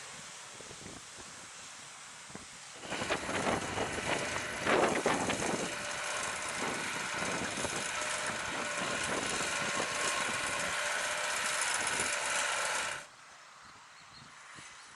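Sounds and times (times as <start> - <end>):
faint engine whine: 2.6 - 14.9
tractor diesel engine under load: 2.8 - 13.1.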